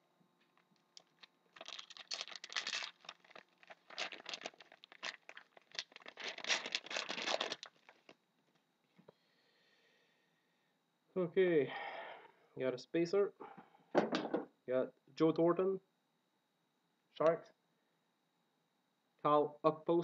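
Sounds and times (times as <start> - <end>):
foil wrapper tearing and crinkling: 0.8 - 8.2.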